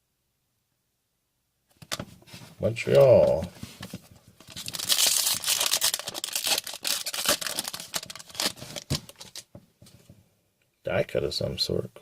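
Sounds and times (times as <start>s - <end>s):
foil wrapper crinkling and tearing: 4.4s - 9.5s.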